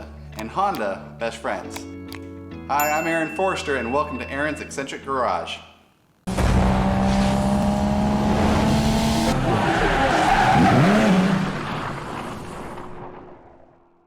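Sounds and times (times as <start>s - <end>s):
car engine revving: 6.3s - 12.0s.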